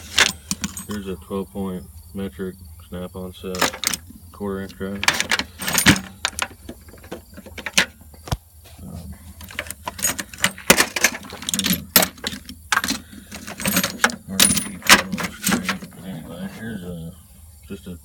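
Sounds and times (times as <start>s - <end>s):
metal tools clinking in a drawer: 0.0s - 1.2s, 3.5s - 8.0s, 9.3s - 16.0s.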